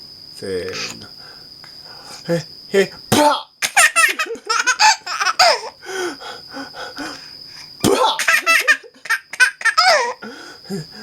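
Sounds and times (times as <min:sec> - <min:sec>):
baby laughing: 0:03.6 - 0:05.7, 0:08.0 - 0:10.2.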